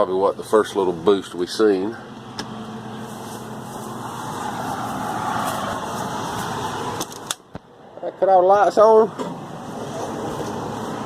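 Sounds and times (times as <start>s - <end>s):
generator running steadily: 0.0s - 8.0s
road traffic: 0.0s - 11.0s.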